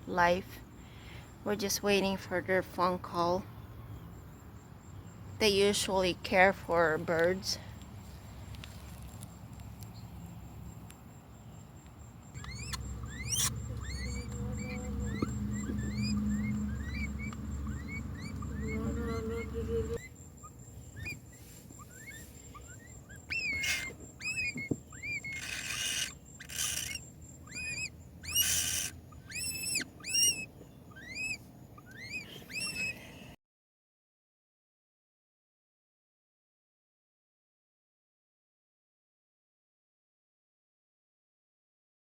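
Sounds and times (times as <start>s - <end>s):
baby birds chirping: 12.1s - 33.2s
low hum: 12.4s - 20.0s.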